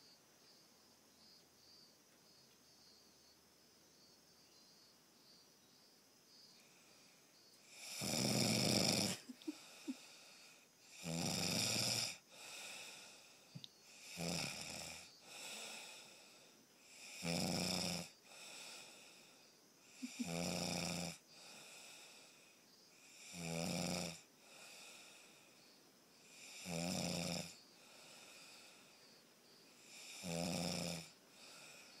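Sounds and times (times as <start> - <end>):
person snoring: 7.7 - 13.3, 14.0 - 19.2, 19.9 - 22.3, 23.1 - 25.2, 26.3 - 28.8, 29.8 - 32.0.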